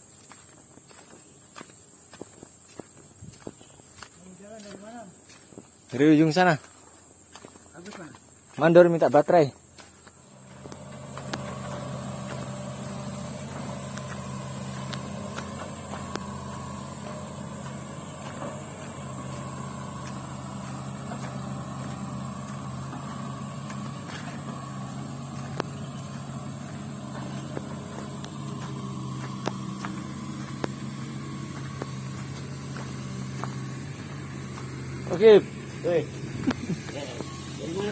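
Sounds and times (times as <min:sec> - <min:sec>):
excavator diesel engine running: 0:07.8 - 0:37.9.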